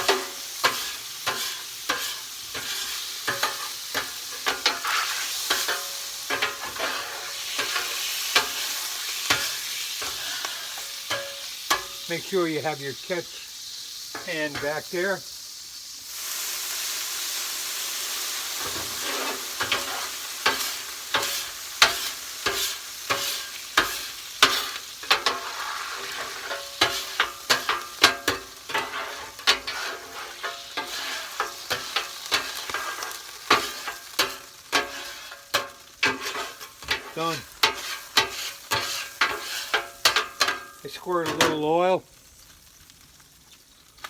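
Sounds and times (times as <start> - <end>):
water sizzling on hot griddle: 0.0 - 44.0
scraper dragged across griddle: 4.4 - 9.0, 10.0 - 10.9, 18.6 - 27.8, 28.7 - 37.0, 37.6 - 39.9.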